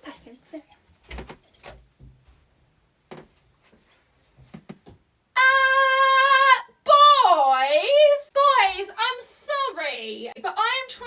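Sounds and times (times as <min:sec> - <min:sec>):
faint knocks and shuffles: 0:00.0 - 0:05.0.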